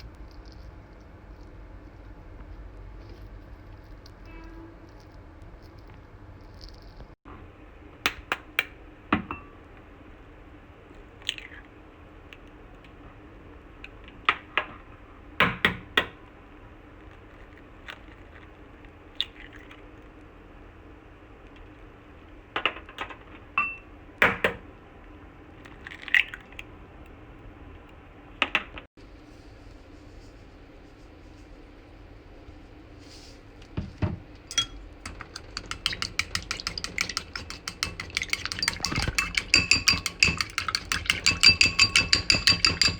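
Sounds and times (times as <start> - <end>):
utensils clinking on cookware: 34.5 - 42.9.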